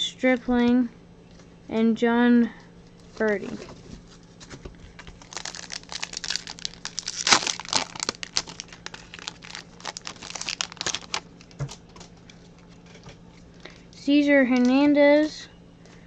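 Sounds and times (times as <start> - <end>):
card pack wrapper crinkling: 5.0 - 13.0.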